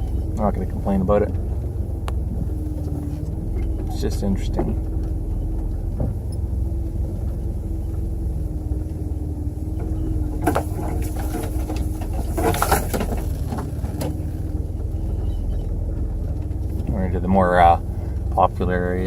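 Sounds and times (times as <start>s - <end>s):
vehicle engine low rumble: 0.0s - 19.0s.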